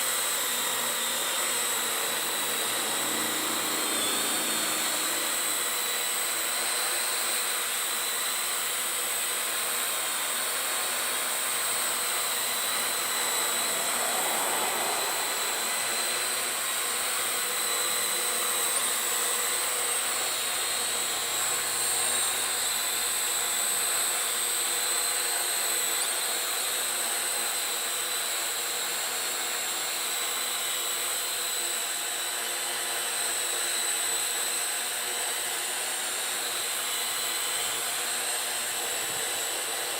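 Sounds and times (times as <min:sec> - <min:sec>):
drone propellers whining: 0:00.0 - 0:24.1.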